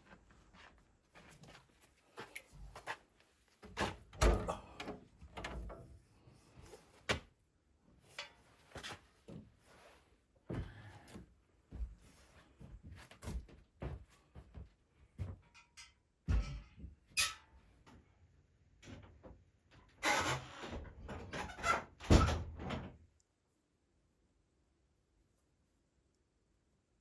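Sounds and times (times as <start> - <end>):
knocks and clatter of handling: 15.2 - 17.1.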